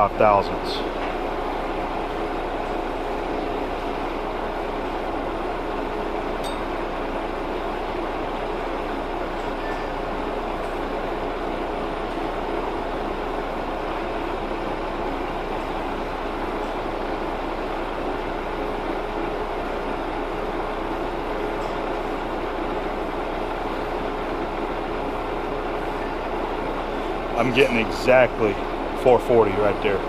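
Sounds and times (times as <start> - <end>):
metal lathe humming: 0.0 - 30.0.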